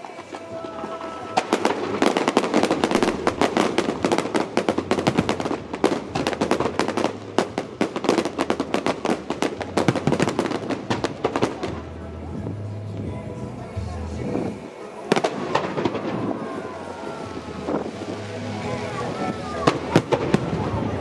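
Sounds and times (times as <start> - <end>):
fireworks crackling: 0.0 - 21.0.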